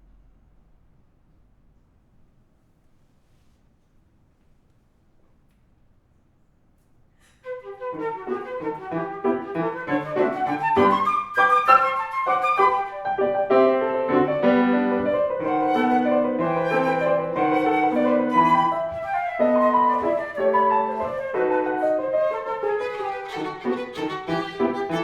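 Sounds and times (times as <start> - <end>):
flute melody: 7.5 - 25.0
piano accompaniment: 7.6 - 25.0.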